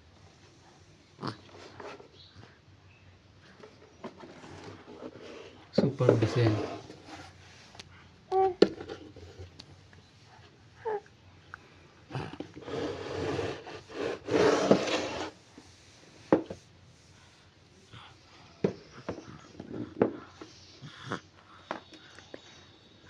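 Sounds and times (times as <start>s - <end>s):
rubbing and scraping: 3.6s - 7.7s, 12.4s - 15.8s.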